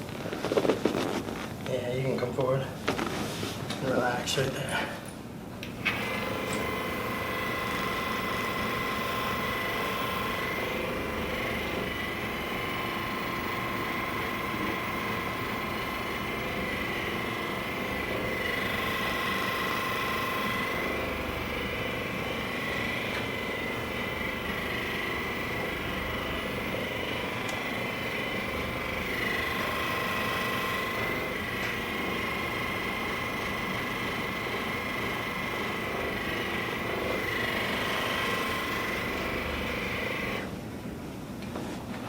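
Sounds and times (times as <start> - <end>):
massage gun motor buzzing: 0.0 - 1.4, 5.6 - 40.6.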